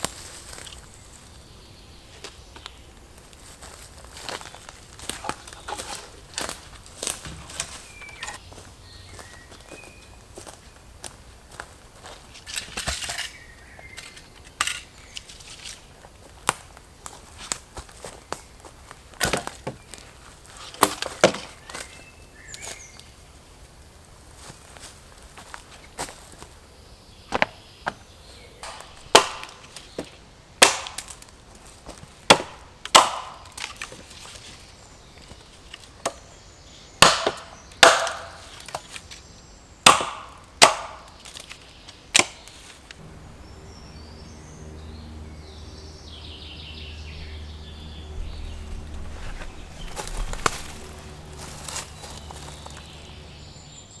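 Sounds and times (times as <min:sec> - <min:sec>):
axe chopping wood: 0:19.2 - 0:19.9, 0:20.8 - 0:21.6, 0:28.6 - 0:31.3, 0:32.2 - 0:34.0, 0:37.0 - 0:38.9, 0:39.8 - 0:41.5, 0:42.2 - 0:42.5, 0:49.0 - 0:53.2
low steady hum: 0:42.9 - 0:54.0.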